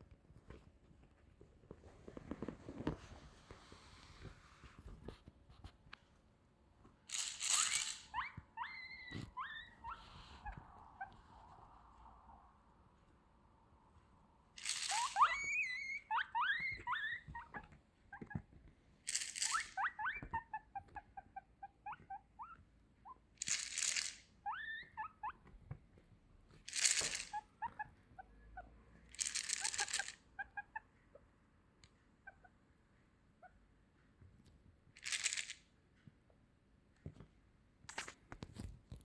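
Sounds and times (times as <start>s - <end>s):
tablet box rattling: 7.1s - 8.2s, 14.6s - 15.7s, 16.7s - 20.4s, 23.4s - 24.2s, 26.6s - 27.5s, 29.1s - 30.3s, 35.0s - 35.6s
guinea pig squeaking: 7.1s - 11.9s, 14.6s - 25.6s, 26.5s - 31.3s, 32.2s - 32.6s.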